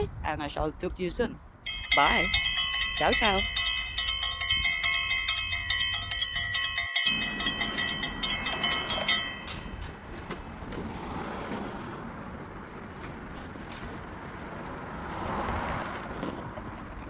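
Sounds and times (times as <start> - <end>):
bell-like chiming tones: 1.7 - 9.9.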